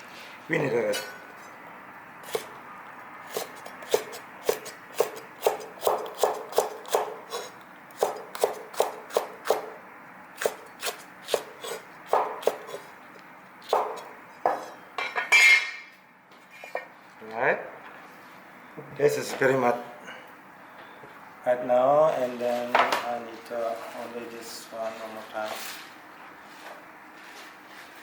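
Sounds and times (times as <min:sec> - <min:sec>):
knife chopping on cutting board: 0:03.3 - 0:09.7, 0:10.4 - 0:12.8, 0:13.7 - 0:14.7.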